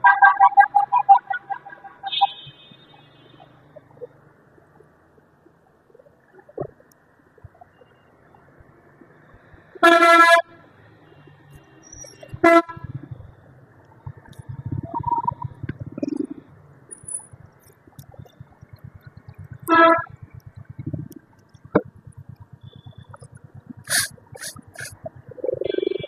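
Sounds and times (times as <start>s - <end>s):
vehicle horn honking: 0.0s - 3.4s, 9.8s - 10.4s, 12.4s - 13.0s, 19.7s - 20.1s, 25.6s - 26.0s
low uneven rumble: 12.3s - 25.6s.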